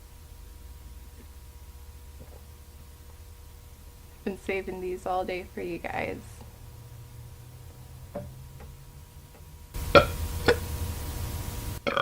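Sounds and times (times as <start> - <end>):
background hiss: 0.0 - 12.0
woman burping: 9.9 - 10.6.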